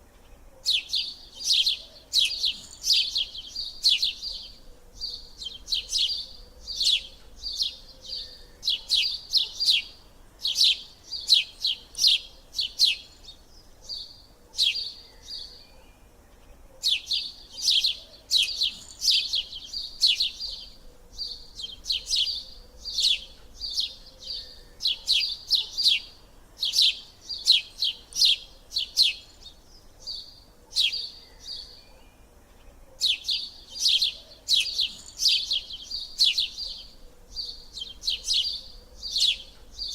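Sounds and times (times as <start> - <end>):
small bird chirping: 0.0 - 39.9.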